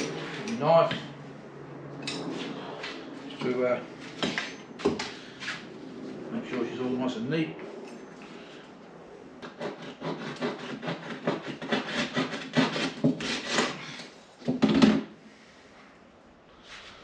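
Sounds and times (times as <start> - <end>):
hand scraping along an edge: 9.4 - 14.1.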